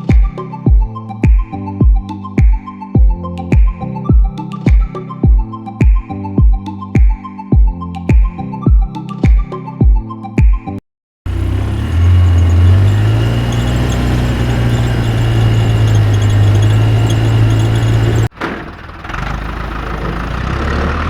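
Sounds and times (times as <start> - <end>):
vehicle engine running: 11.3 - 21.0.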